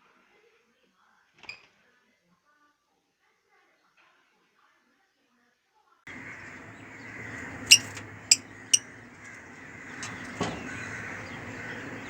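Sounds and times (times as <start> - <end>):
lovebirds giving shrill calls: 6.2 - 9.0.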